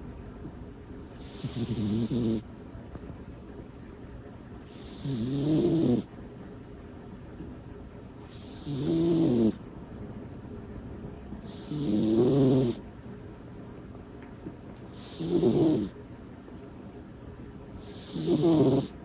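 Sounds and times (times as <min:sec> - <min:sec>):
cat breathing quietly: 0:01.1 - 0:02.4
cat snoring loudly: 0:01.2 - 0:02.4, 0:04.7 - 0:06.1, 0:08.3 - 0:09.6, 0:11.5 - 0:12.8, 0:15.0 - 0:16.0, 0:17.8 - 0:19.0.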